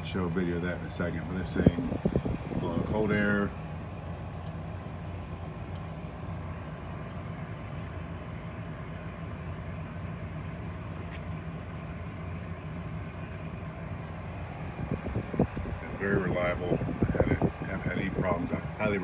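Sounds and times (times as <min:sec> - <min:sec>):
compressor and fan humming: 0:00.0 - 0:19.0
air rushing: 0:01.5 - 0:03.1, 0:14.1 - 0:18.9.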